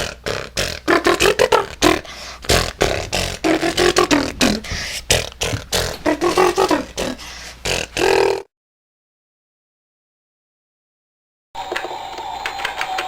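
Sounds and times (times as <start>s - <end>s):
person beatboxing: 0.0s - 8.5s.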